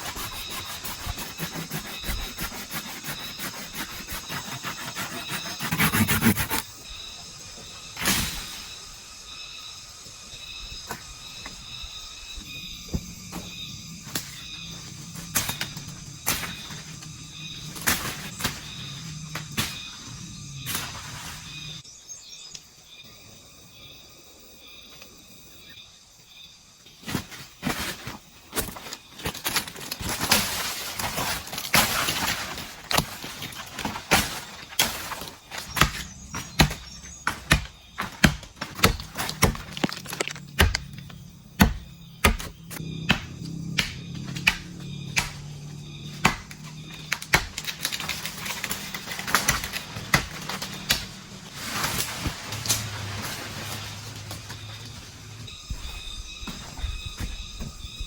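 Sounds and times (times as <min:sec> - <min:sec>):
scraping: 0:00.0 - 0:06.9, 0:37.3 - 0:41.3
bamboo chopping knocks and cracks: 0:34.1 - 0:41.0, 0:41.6 - 0:48.4, 0:49.1 - 0:51.2.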